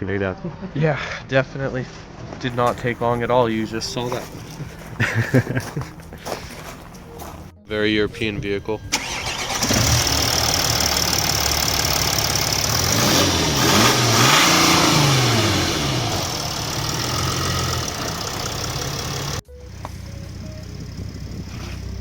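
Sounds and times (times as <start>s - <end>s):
car engine revving: 2.6s - 5.0s, 8.9s - 22.0s.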